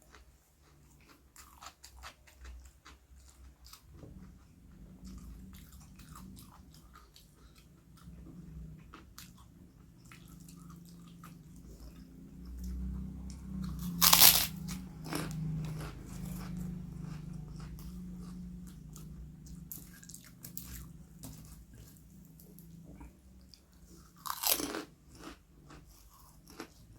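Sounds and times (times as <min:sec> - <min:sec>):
low steady hum: 0:00.0 - 0:26.9
person chewing crunchy food: 0:00.0 - 0:26.9.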